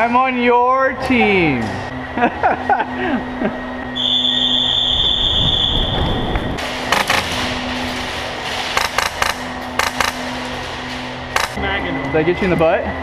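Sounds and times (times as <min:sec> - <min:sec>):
airsoft guns firing: 0:06.9 - 0:07.4, 0:08.7 - 0:10.3, 0:11.4 - 0:11.6.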